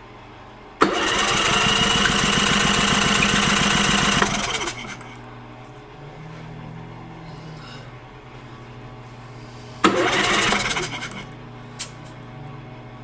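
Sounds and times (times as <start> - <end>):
electric starter cranking engine: 0.8 - 5.2, 9.8 - 12.0.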